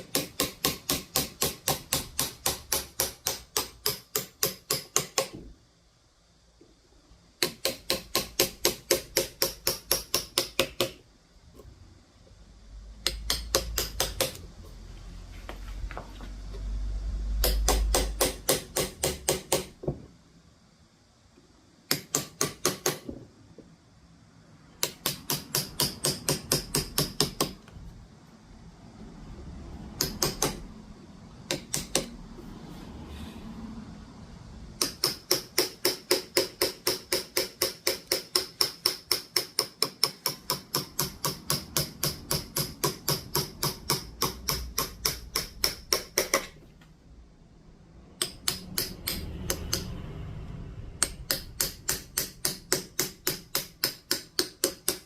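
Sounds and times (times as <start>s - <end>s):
mallet tapping wood chisel: 0.0s - 5.5s, 7.4s - 11.0s, 13.0s - 14.4s, 17.4s - 19.8s, 21.9s - 23.2s, 24.8s - 27.7s, 30.0s - 30.6s, 31.5s - 32.2s, 34.8s - 46.6s, 48.2s - 50.0s, 51.0s - 55.0s.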